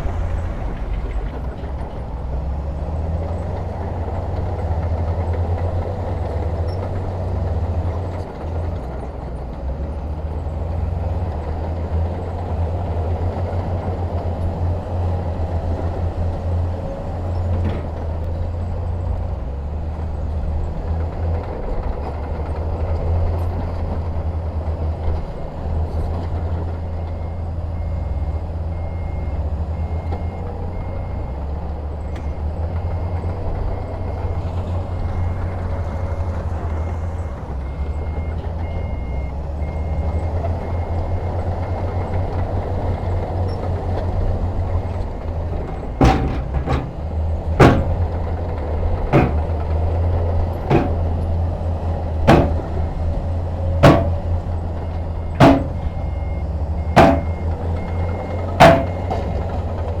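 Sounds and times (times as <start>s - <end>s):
heavy diesel machinery running: 0.0s - 60.0s
sharp knocks: 17.6s - 18.2s, 45.6s - 48.2s, 49.1s - 49.7s, 50.6s - 51.2s, 52.3s - 53.0s, 53.8s - 54.4s, 55.4s - 56.3s, 56.9s - 57.5s, 58.6s - 59.2s.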